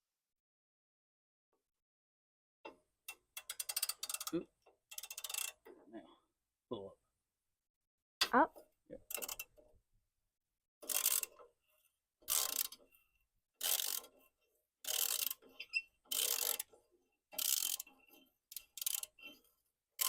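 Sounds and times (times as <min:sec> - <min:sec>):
ratchet wrench clicking: 0:03.1 - 0:05.6, 0:09.1 - 0:09.5, 0:10.8 - 0:11.4, 0:12.3 - 0:12.8, 0:13.6 - 0:14.1, 0:14.8 - 0:16.7, 0:17.4 - 0:17.9, 0:18.5 - 0:19.2.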